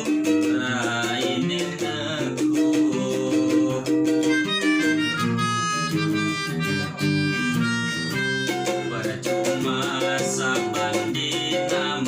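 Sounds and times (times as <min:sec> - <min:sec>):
guitar accompaniment: 0:00.0 - 0:12.0
person singing: 0:00.0 - 0:12.0
sustained melodic lead: 0:03.9 - 0:10.8.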